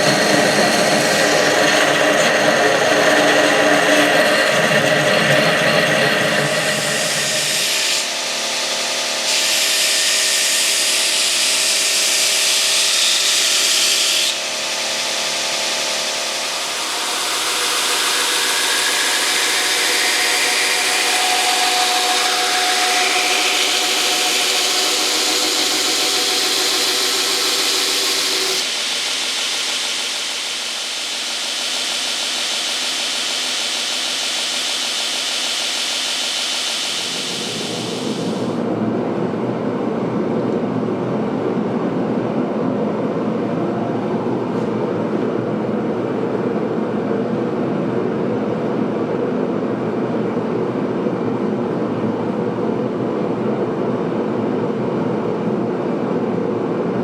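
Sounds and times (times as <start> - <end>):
power grinder grinding steel: 0.0 - 32.3.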